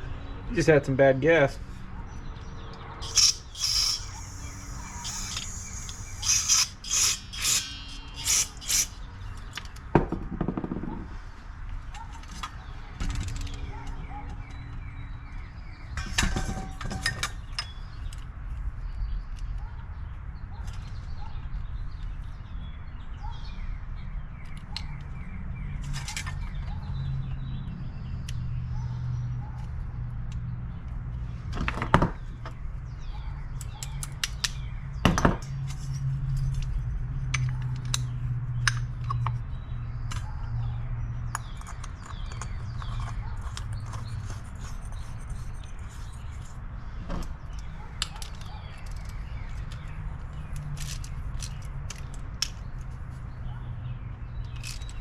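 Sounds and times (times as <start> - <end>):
birds chirping: 0.0 - 9.6.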